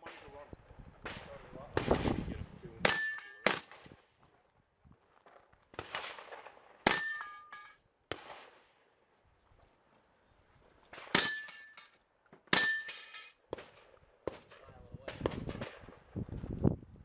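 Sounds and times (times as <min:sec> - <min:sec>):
gunshots: 0:01.0 - 0:04.0, 0:05.7 - 0:07.4, 0:08.1 - 0:08.7, 0:10.9 - 0:11.6
steel target ringing clang: 0:02.9 - 0:03.6, 0:06.9 - 0:07.8, 0:11.2 - 0:13.4.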